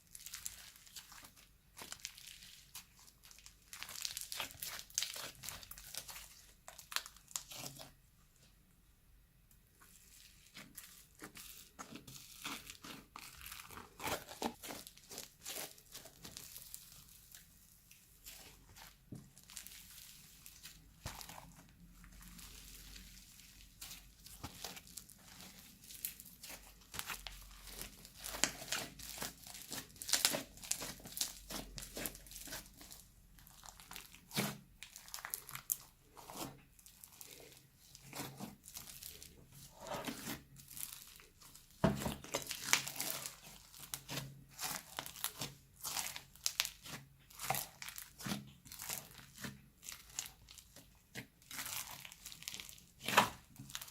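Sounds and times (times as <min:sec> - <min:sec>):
slime squished by hand: 0:00.1 - 0:08.0, 0:09.8 - 0:53.9.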